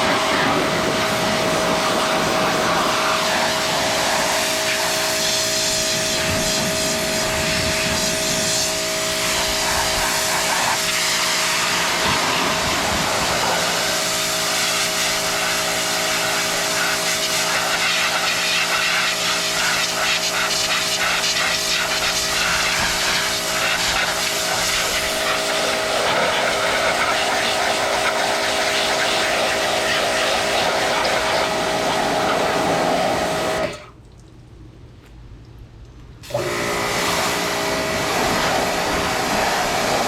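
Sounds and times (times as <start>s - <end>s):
pressure washer motor whining: 0.0s - 33.9s, 36.2s - 40.0s
water spray hissing: 3.0s - 33.0s.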